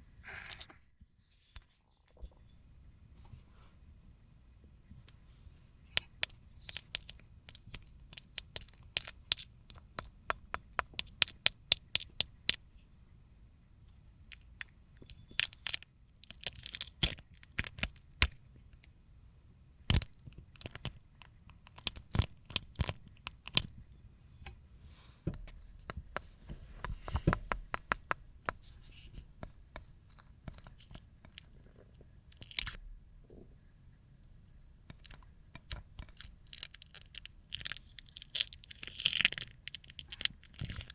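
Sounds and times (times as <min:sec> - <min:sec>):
dried slime peeling and crackling: 0:34.9 - 0:40.9.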